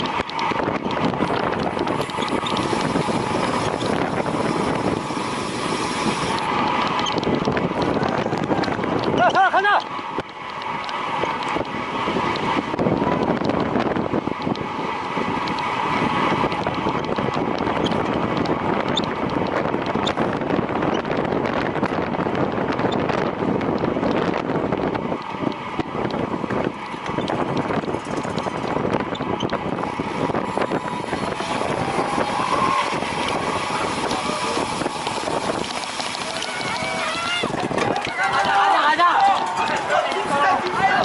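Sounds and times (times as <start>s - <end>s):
wheels rolling and whirring: 0.0s - 41.0s
wind rushing on microphone: 0.0s - 41.0s.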